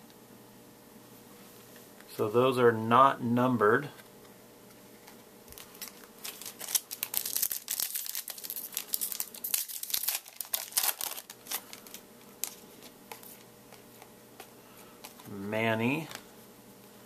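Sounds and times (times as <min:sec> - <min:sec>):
wrapper tearing and crinkling: 0:05.5 - 0:12.9.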